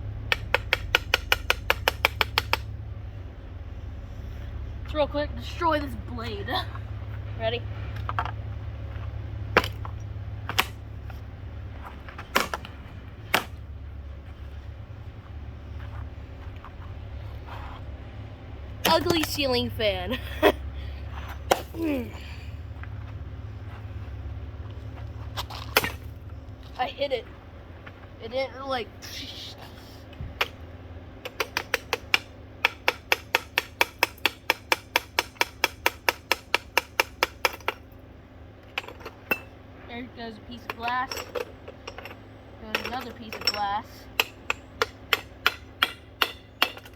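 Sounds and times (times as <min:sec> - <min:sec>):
steady low hum: 0:00.0 - 0:46.9
ceiling fan blade being struck: 0:00.2 - 0:02.8, 0:31.2 - 0:37.8, 0:42.7 - 0:46.9
blows striking glass housing: 0:40.6 - 0:46.9.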